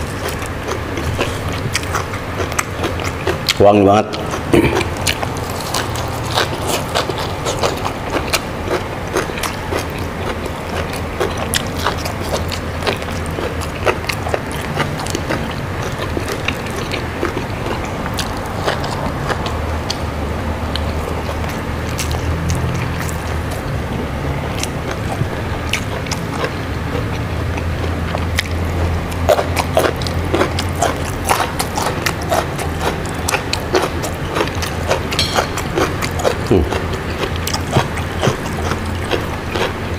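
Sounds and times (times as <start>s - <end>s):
chewing and crunching vegetables: 0.0s - 39.9s.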